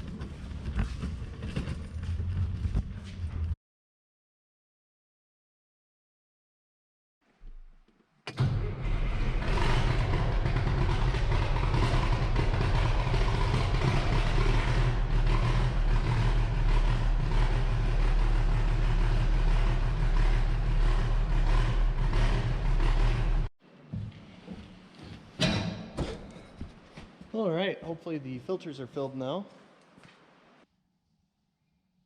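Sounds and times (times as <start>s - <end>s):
tractor diesel engine running: 8.3s - 23.5s.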